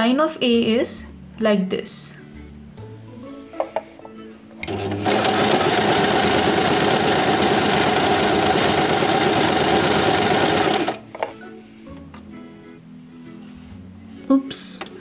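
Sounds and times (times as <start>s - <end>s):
electric sewing machine stitching: 4.6s - 11.0s.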